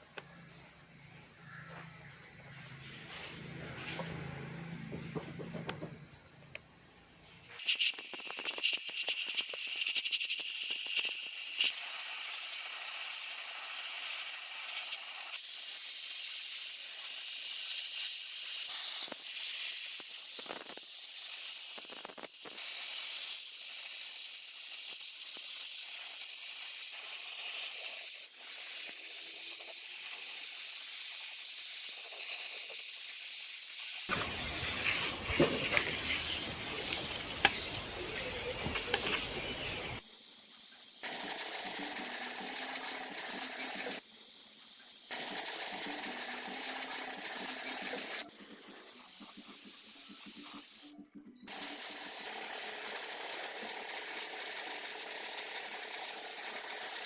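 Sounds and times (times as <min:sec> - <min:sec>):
steady air hiss: 0:07.6 - 0:34.1, 0:40.0 - 0:57.0.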